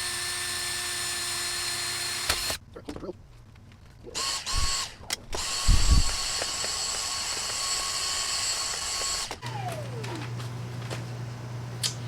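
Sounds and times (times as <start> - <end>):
power drill drilling metal: 0.0 - 2.6, 4.2 - 9.9
motor spinning down: 8.5 - 10.5.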